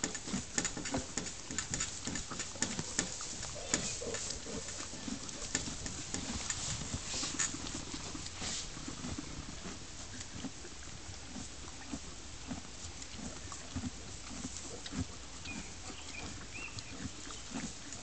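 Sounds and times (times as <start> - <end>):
horse chewing feed: 0.0 - 18.0.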